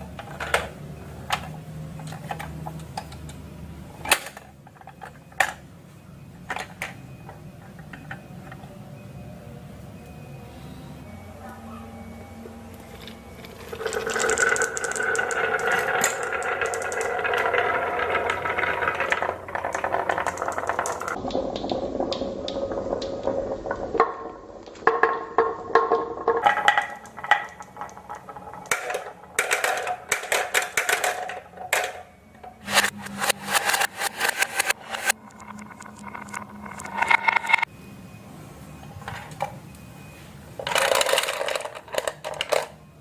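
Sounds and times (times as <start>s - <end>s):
marbles clacking on track: 12.9s - 37.7s, 40.6s - 42.8s
marbles rolling down wooden run: 12.9s - 37.7s.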